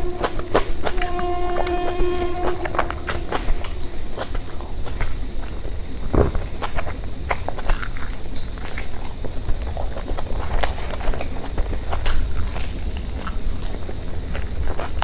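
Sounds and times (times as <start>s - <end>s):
chewing and biting: 4.2s - 15.0s.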